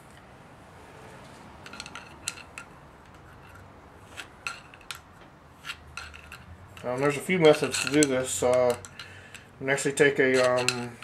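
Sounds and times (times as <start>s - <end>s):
hand tools clicking on metal: 1.6s - 9.5s, 10.2s - 11.0s.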